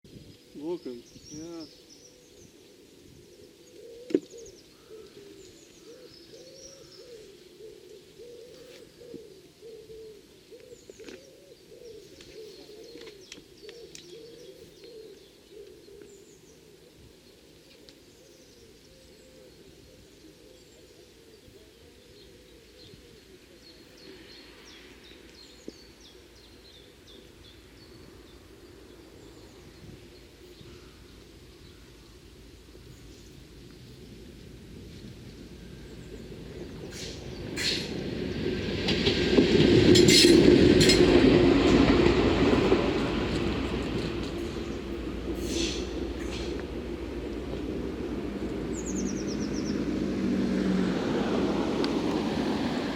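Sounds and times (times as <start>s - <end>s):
small birds chirping: 0.1s - 37.8s, 41.7s - 50.0s
dove cooing: 1.9s - 24.3s.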